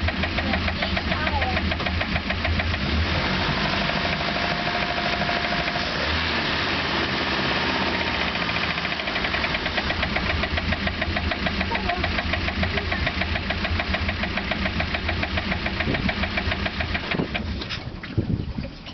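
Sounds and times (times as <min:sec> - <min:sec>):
fast rattling clatter: 0:00.0 - 0:02.9, 0:07.8 - 0:17.7
boat engine running: 0:00.0 - 0:18.9.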